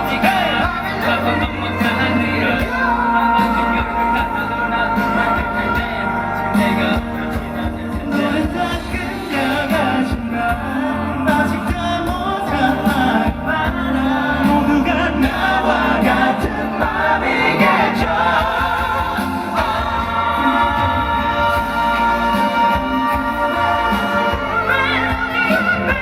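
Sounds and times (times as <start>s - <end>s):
live band backing: 0.0s - 26.0s
person singing pop ballad: 0.0s - 26.0s.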